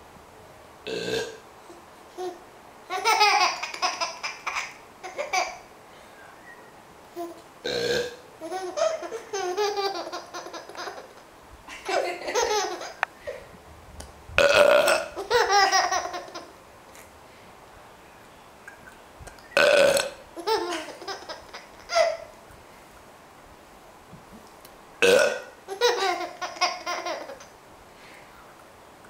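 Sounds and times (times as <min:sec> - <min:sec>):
person burping: 0:00.9 - 0:01.4, 0:07.6 - 0:08.2, 0:14.4 - 0:15.1, 0:19.6 - 0:20.2, 0:25.0 - 0:25.5
small child giggling: 0:02.2 - 0:05.6, 0:08.4 - 0:13.5, 0:15.1 - 0:16.6, 0:20.4 - 0:22.3, 0:25.7 - 0:27.5.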